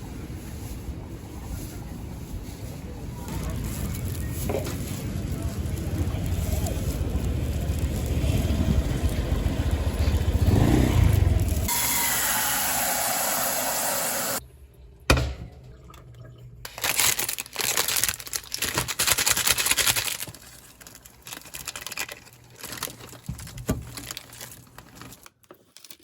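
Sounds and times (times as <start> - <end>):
plastic packaging crinkling: 16.7 - 26.0.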